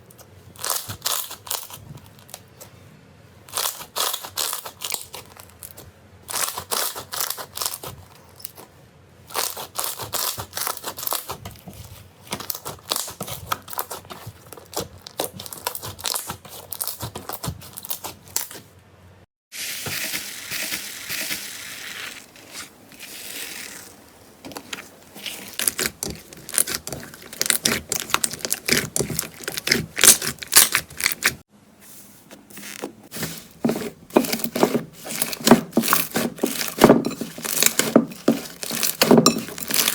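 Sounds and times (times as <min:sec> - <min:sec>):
slime squished by hand crackling: 0:25.2 - 0:31.4.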